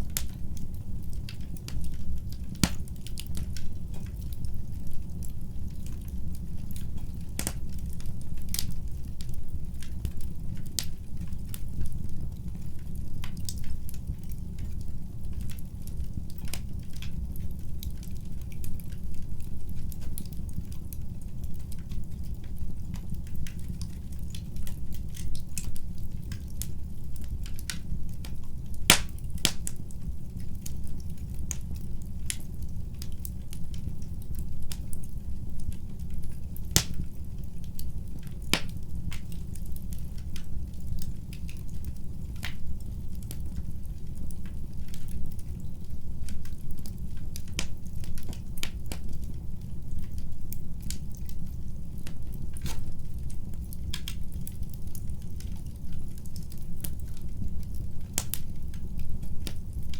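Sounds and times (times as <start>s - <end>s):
fire popping and snapping: 0.0s - 59.9s
wood fire crackling: 0.0s - 59.9s.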